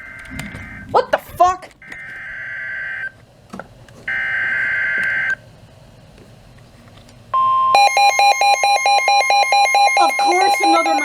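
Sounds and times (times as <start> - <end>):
steady warning alarm tone: 0.0 - 1.1, 1.8 - 3.2, 4.1 - 5.4, 7.4 - 11.0
rapidly pulsing electronic alarm: 0.0 - 1.2, 1.8 - 3.2, 4.1 - 5.4, 7.4 - 11.0.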